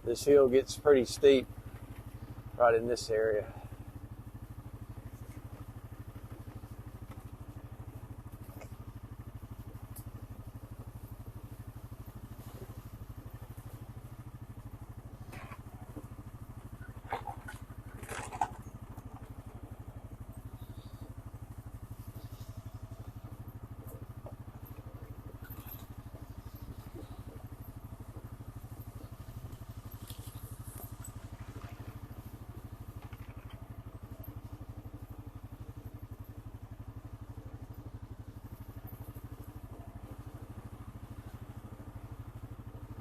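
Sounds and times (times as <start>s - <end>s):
atv engine running: 0.0s - 43.0s
knocks and rattles: 17.1s - 19.7s.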